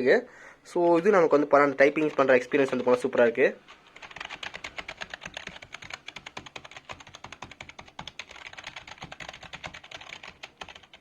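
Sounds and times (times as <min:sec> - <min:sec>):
keyboard typing clicks: 0:01.8 - 0:03.0, 0:03.8 - 0:11.0.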